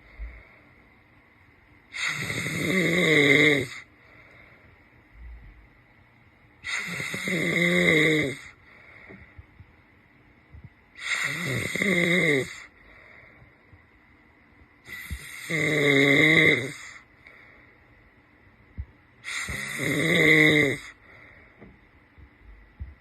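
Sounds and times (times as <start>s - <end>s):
quiet breathing: 0.0s - 23.0s
man snoring: 1.9s - 3.9s, 6.6s - 8.6s, 11.0s - 12.7s, 14.9s - 17.0s, 19.2s - 21.0s.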